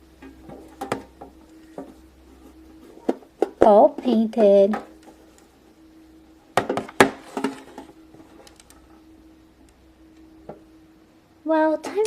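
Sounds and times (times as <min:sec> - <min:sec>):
faint steady hum: 0:00.0 - 0:12.0
hard objects knocking on a surface: 0:06.6 - 0:07.8.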